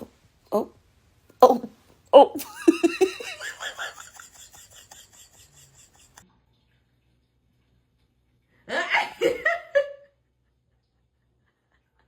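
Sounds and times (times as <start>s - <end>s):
person laughing: 2.4s - 6.2s.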